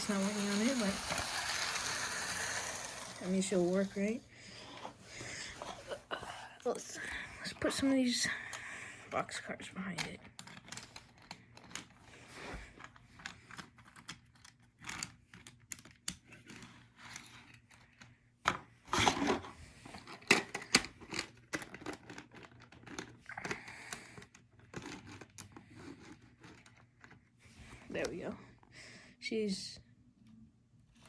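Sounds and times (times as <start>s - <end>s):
light plastic clicks and rattles: 9.6s - 12.0s, 12.8s - 18.2s.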